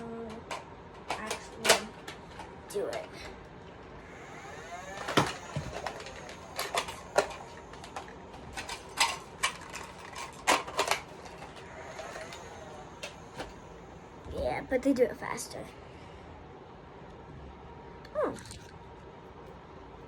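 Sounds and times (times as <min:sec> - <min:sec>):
plastic toy blaster clacks: 0:00.4 - 0:01.9, 0:04.2 - 0:13.6.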